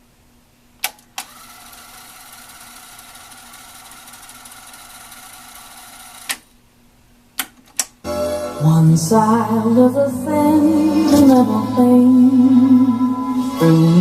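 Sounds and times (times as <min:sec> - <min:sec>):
tape motor whirring: 0:01.2 - 0:06.4.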